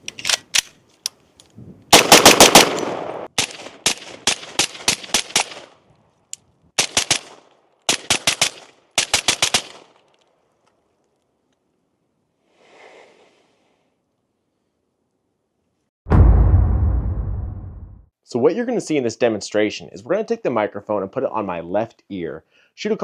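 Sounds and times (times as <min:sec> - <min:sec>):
rifle gunshots: 0:01.9 - 0:05.7.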